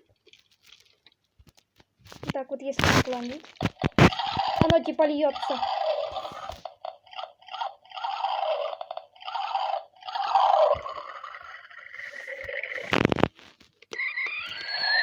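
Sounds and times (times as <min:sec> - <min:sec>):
toy speaker water gurgling: 0:04.1 - 0:12.9, 0:14.0 - 0:15.0.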